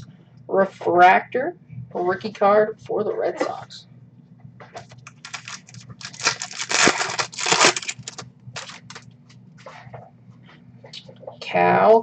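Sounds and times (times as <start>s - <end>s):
wrapper crinkling and tearing: 5.0s - 9.0s.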